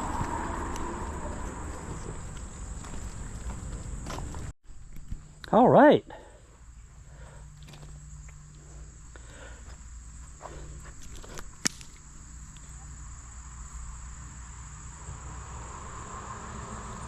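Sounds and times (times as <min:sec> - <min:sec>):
sharp click: 0:11.6 - 0:12.0.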